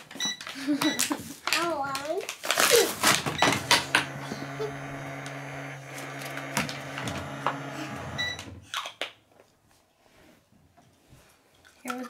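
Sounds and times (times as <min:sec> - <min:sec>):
toy microwave electronic hum: 0:03.2 - 0:08.6.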